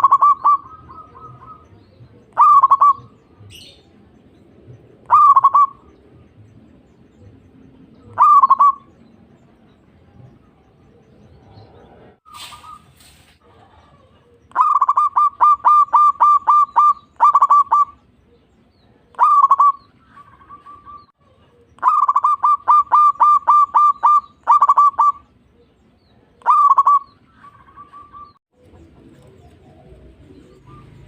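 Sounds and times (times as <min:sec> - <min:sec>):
dove cooing: 0:00.0 - 0:04.0, 0:05.0 - 0:06.0, 0:08.0 - 0:09.0, 0:10.7 - 0:31.0
soft bird trills: 0:12.3 - 0:13.3.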